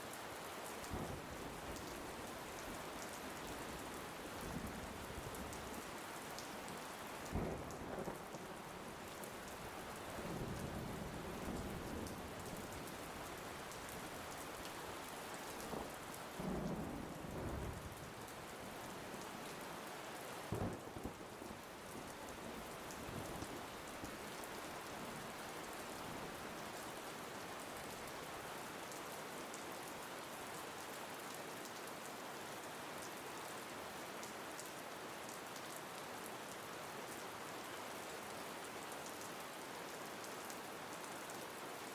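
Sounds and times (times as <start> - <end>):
steady rain falling: 0.0 - 41.9
low rolls of thunder: 7.3 - 8.4, 15.7 - 18.0.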